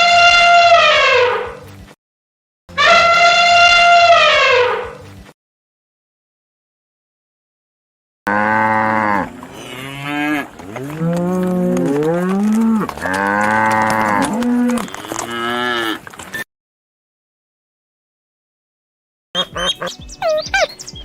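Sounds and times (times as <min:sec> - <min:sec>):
cattle mooing: 0:02.8 - 0:05.0, 0:08.3 - 0:16.1.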